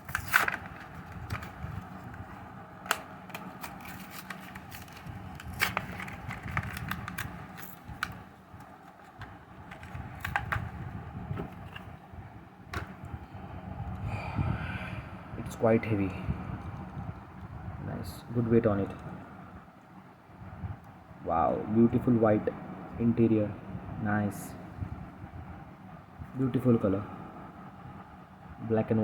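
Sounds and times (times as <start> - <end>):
plastic blister pack tearing: 0.0 - 1.9, 2.9 - 8.3.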